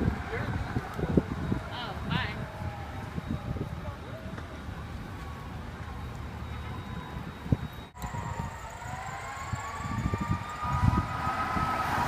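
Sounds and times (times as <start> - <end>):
truck engine rumbling: 0.0 - 12.0
mechanical siren winding up: 6.0 - 12.0.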